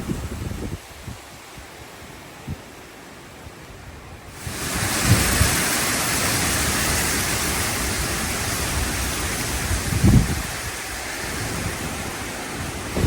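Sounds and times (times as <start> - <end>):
strong wind rushing: 0.0 - 1.6, 4.3 - 13.0
wind buffeting microphone: 0.0 - 2.8, 3.8 - 13.0.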